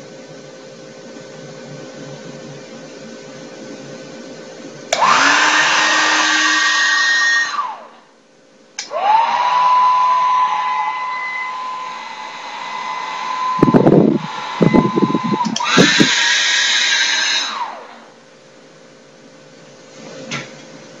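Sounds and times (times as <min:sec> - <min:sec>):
hair dryer blowing: 0:04.9 - 0:08.0, 0:08.8 - 0:18.1.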